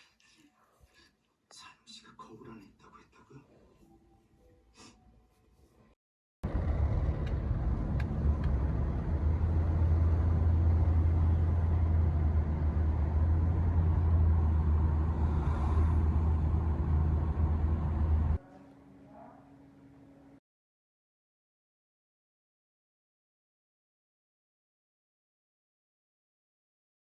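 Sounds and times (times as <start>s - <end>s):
car cabin road and engine noise: 6.4s - 18.4s.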